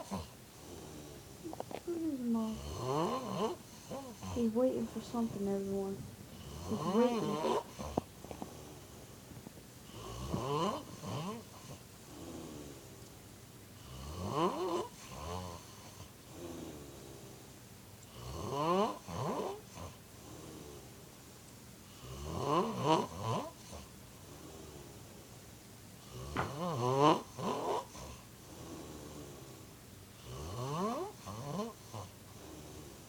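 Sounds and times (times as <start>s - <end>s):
man snoring: 0.0s - 4.5s, 6.4s - 8.8s, 9.9s - 12.9s, 13.8s - 17.3s, 18.1s - 20.9s, 22.0s - 24.9s, 26.0s - 29.6s, 30.2s - 33.0s.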